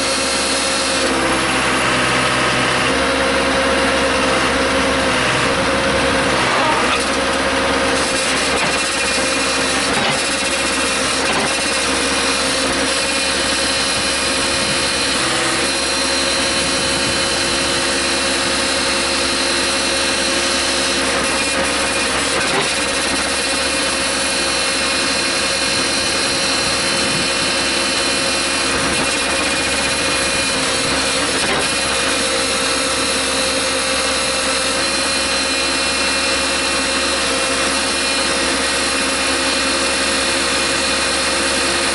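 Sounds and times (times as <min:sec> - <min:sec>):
backhoe engine running: 0:00.0 - 0:41.9
steady whine: 0:12.7 - 0:22.0, 0:23.2 - 0:32.0.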